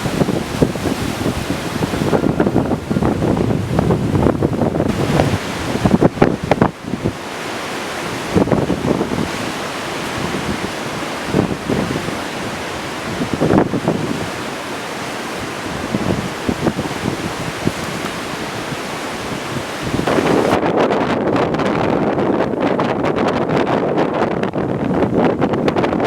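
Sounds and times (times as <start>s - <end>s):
breaking waves: 0.0s - 20.8s
wind buffeting microphone: 0.0s - 26.0s.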